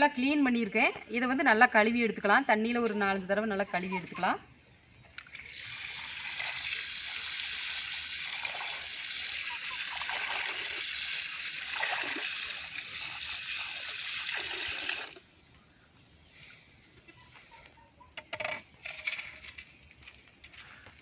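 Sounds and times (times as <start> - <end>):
water splashing and sloshing: 5.2 - 15.3.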